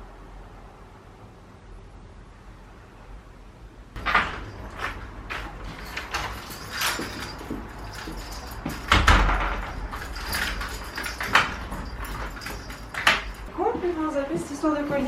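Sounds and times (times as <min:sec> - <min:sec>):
heavy door thump: 0:08.7 - 0:13.4.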